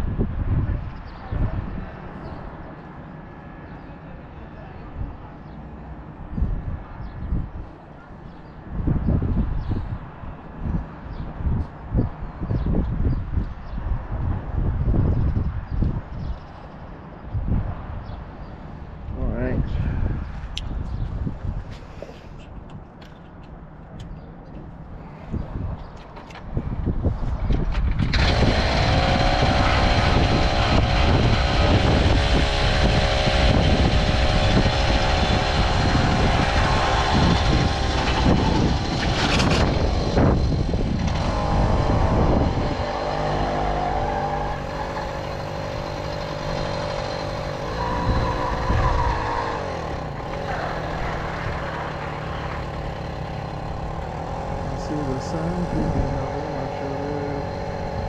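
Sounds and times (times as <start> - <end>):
wind on microphone: 0.0 - 2.8, 6.2 - 23.0, 24.1 - 52.0, 52.6 - 58.0
moped engine running: 27.8 - 58.0.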